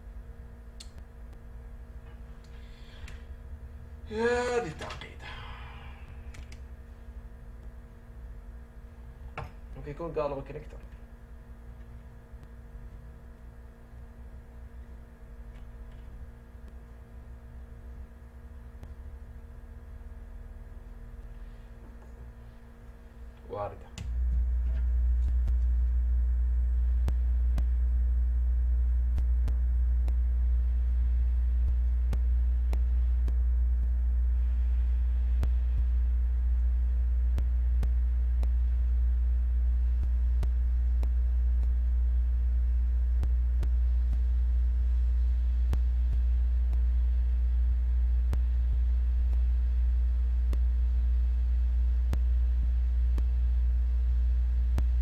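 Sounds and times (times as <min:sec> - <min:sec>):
low electrical hum: 0:00.0 - 0:55.0.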